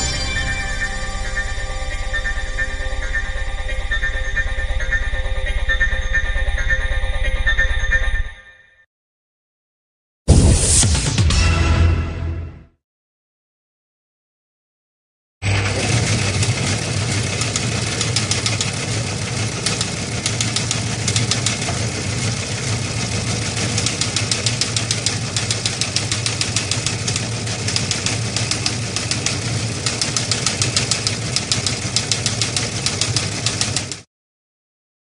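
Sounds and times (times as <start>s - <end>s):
fast mechanical clatter: 15.5s - 34.1s.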